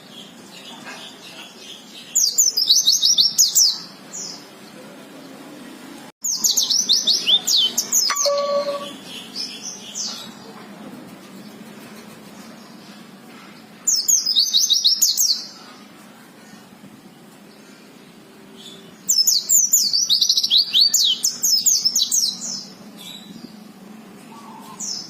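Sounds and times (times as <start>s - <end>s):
bird chirping: 6.2s - 10.3s.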